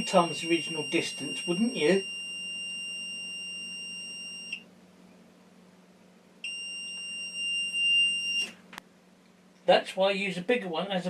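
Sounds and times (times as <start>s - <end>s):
continuity tester high beep: 0.0s - 4.7s, 6.4s - 8.6s.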